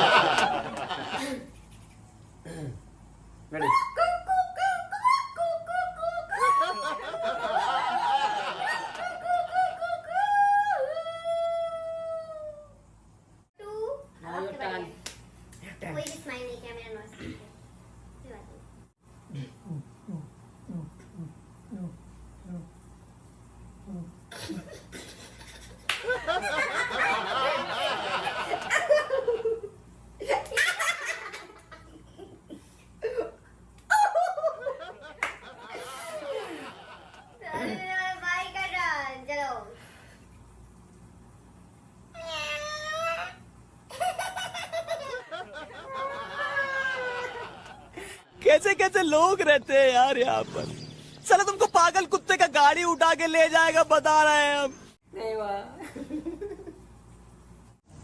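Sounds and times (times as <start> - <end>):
people laughing: 0.0 - 1.7, 6.3 - 10.1, 24.4 - 33.3, 33.9 - 37.6, 43.9 - 48.4.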